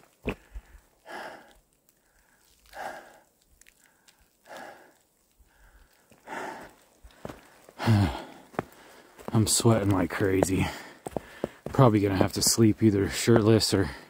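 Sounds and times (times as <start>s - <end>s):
person breathing hard: 0.3s - 9.3s, 10.6s - 11.7s.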